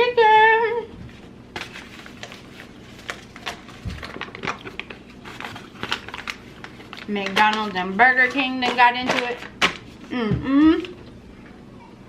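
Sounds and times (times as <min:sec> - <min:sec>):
paper packaging crinkling: 0:01.1 - 0:10.1.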